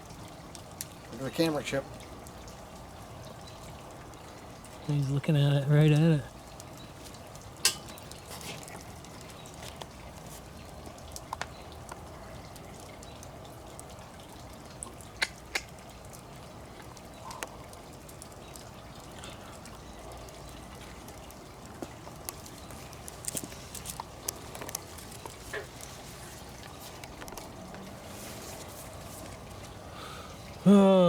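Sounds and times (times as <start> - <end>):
campfire crackling: 0.0 - 31.0
fire popping: 6.3 - 13.0, 16.7 - 29.7.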